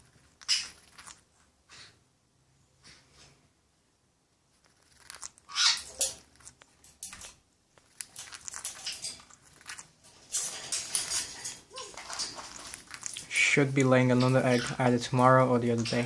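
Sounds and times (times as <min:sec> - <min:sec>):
parrot chewing with small clicks: 0:00.0 - 0:02.0, 0:04.5 - 0:14.8
parrot rustling in wood shavings: 0:00.1 - 0:01.2, 0:07.9 - 0:16.0.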